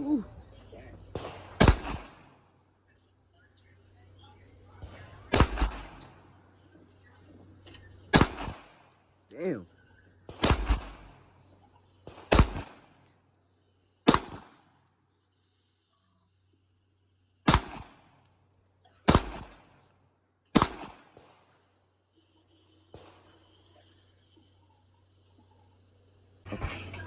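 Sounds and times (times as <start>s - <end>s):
gunshots with echo: 1.2s - 2.3s, 5.3s - 6.1s, 8.1s - 8.8s, 10.3s - 11.1s, 12.1s - 12.9s, 14.1s - 14.6s, 17.5s - 18.0s, 19.1s - 19.7s, 20.6s - 21.3s.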